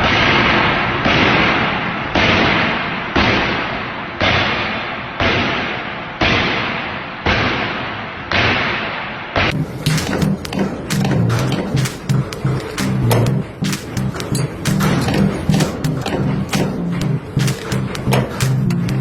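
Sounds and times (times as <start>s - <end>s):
machine heavy thump: 9.5s - 19.0s
noisy rush: 9.5s - 19.0s.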